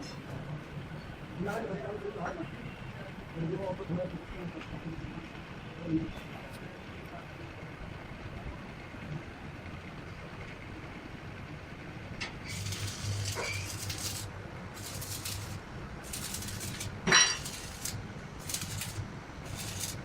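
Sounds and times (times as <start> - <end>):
low hum: 12.3 - 20.0
ringing metallic clank: 17.0 - 17.6.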